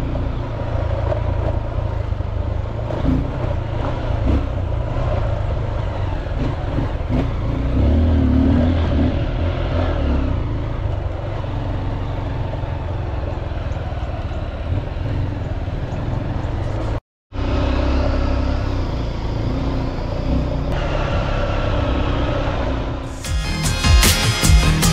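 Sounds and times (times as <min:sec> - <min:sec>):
dirt bike engine revving: 0:02.8 - 0:12.8.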